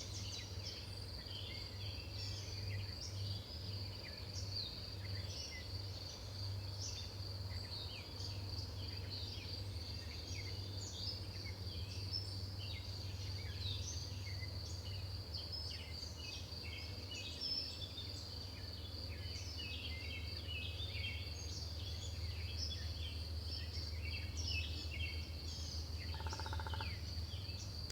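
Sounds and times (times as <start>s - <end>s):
high pulsing insect trill: 26.1s - 27.6s.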